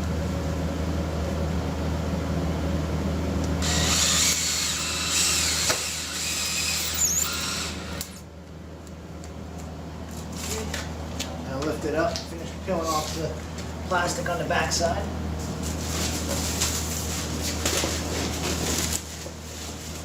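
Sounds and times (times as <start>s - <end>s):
drill bit rasping through plastic: 3.6s - 8.2s
power drill motor hum: 3.6s - 8.2s.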